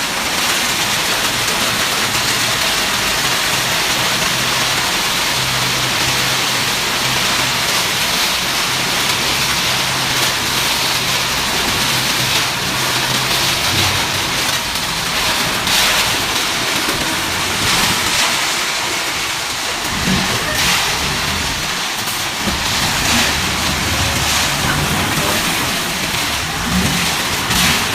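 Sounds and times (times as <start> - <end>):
concrete mixer engine running: 0.0 - 27.9
loud rushing hiss: 12.5 - 27.9.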